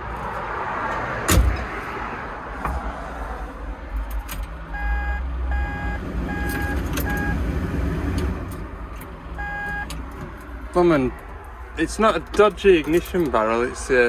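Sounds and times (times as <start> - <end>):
diesel engine rumbling: 0.0 - 14.0
machine warning beeper: 4.8 - 7.5, 9.4 - 9.9.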